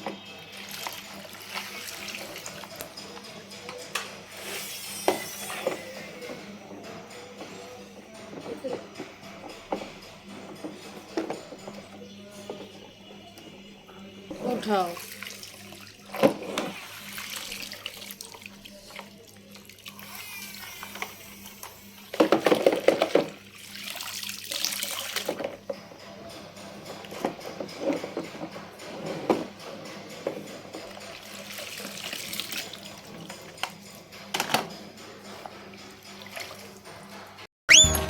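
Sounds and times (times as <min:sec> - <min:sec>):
water splashing in a tub: 0:00.5 - 0:03.0, 0:14.6 - 0:20.1, 0:22.3 - 0:25.6.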